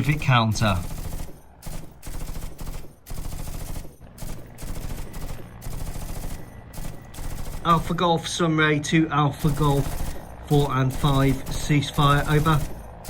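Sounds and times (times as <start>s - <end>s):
automatic gunfire bursts: 0.0s - 8.1s, 9.4s - 13.0s.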